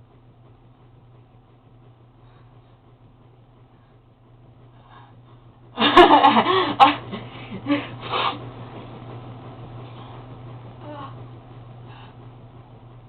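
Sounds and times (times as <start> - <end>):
burst of laughter: 5.8 - 8.0.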